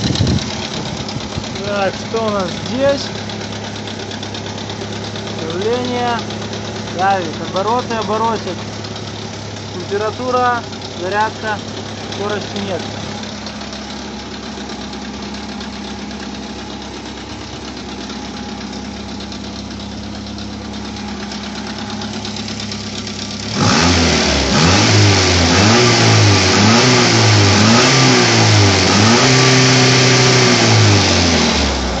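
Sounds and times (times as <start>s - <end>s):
car engine idling with rattle: 0.0s - 32.0s
engine revving: 0.0s - 32.0s.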